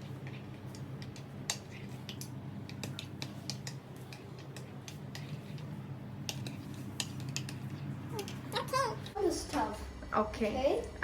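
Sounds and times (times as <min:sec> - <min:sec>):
steady low hum: 0:00.0 - 0:11.0
utensils tapping cookware: 0:00.7 - 0:08.8.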